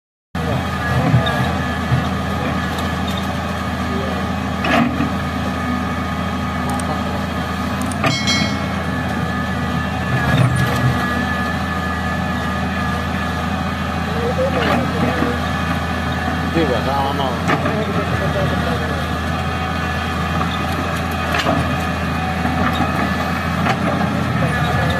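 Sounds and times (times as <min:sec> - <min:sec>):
heavy diesel machinery running: 0:00.4 - 0:24.9
sharp metallic knocks: 0:08.0 - 0:09.5.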